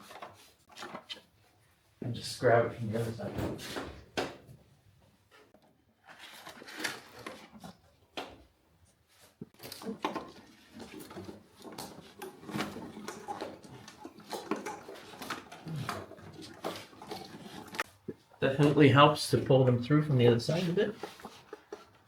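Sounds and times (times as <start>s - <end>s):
wires rustling and scraping: 5.3s - 22.0s.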